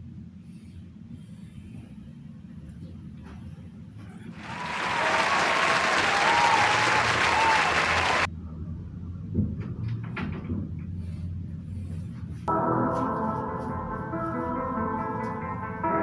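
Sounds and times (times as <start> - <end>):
crowd applauding and cheering: 4.3 - 8.3.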